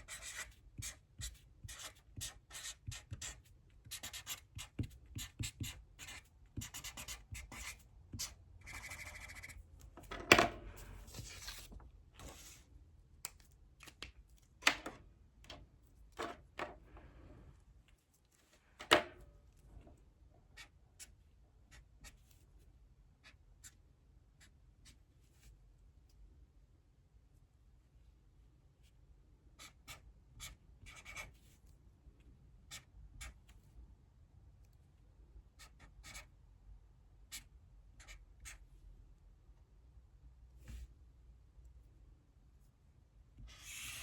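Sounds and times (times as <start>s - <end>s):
pen scratching on paper: 0.0s - 9.6s, 29.6s - 31.3s, 43.5s - 44.0s.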